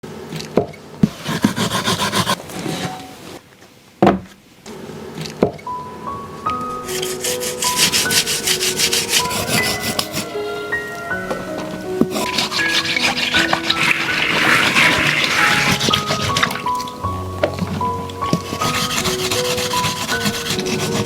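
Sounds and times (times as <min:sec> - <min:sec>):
rhythmic scraping strokes: 0:01.1 - 0:02.4, 0:06.8 - 0:10.4, 0:12.0 - 0:17.1, 0:18.2 - 0:21.0
soft music with simple melody: 0:05.5 - 0:21.0.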